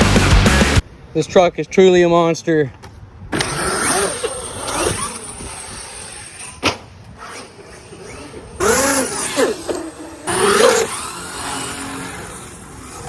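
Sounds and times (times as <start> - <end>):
drivetrain and tyre noise: 2.7 - 13.0
electric motor whining: 3.4 - 13.0.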